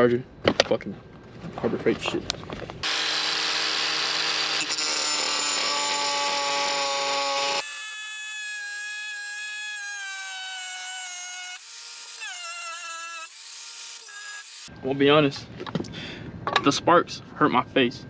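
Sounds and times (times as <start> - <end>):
angle grinder grinding metal: 2.8 - 14.7.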